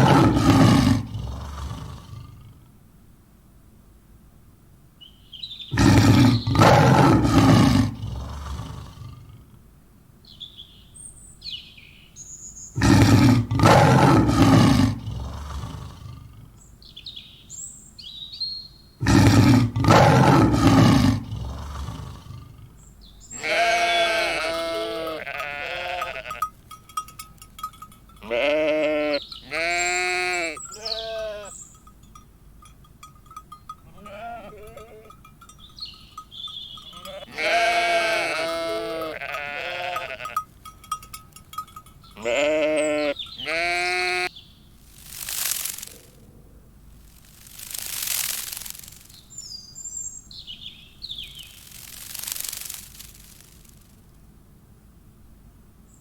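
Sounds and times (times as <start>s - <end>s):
big cat roaring: 0.0s - 2.6s, 5.8s - 9.6s, 12.8s - 16.6s, 19.0s - 22.8s
quavering sheep-like bleating: 23.3s - 26.5s, 28.2s - 31.6s, 33.8s - 35.2s, 36.9s - 40.5s, 42.2s - 44.3s.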